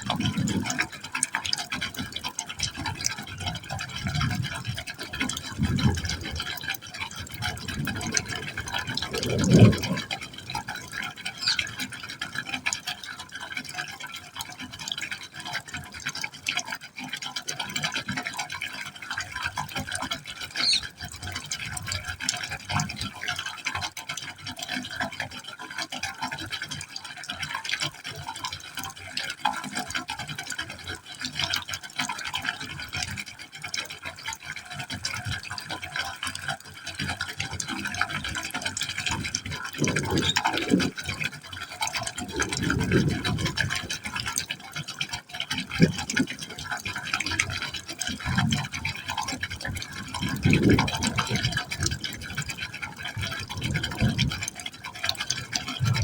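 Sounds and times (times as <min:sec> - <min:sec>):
water splashing into pipe hole: 0:00.0 - 0:56.0
low splash: 0:03.4 - 0:12.5.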